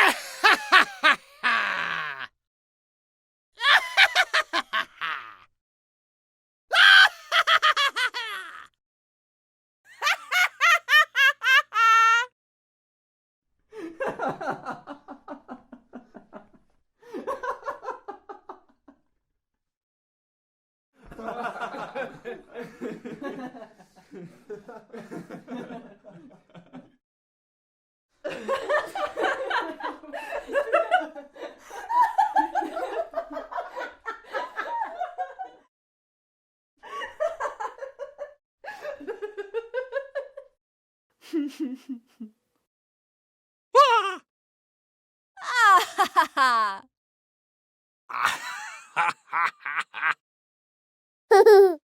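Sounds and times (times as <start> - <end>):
human laughter: 0.0 - 2.3, 3.6 - 5.5, 6.7 - 8.7, 10.0 - 12.3, 21.0 - 26.9, 28.3 - 35.7, 41.2 - 42.4, 45.4 - 46.9, 48.1 - 50.2, 51.3 - 51.8
person laughing: 0.0 - 2.3, 3.6 - 5.4, 6.8 - 8.7, 10.0 - 12.3, 45.4 - 46.9, 51.3 - 51.8.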